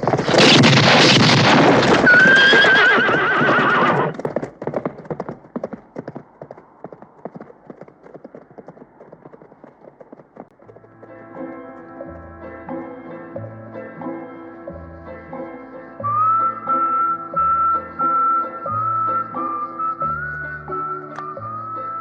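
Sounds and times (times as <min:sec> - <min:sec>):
horses galloping: 0:00.0 - 0:13.2
hooves clip-clopping: 0:00.0 - 0:13.5
horse whinnying: 0:01.3 - 0:04.4
music: 0:10.6 - 0:22.0.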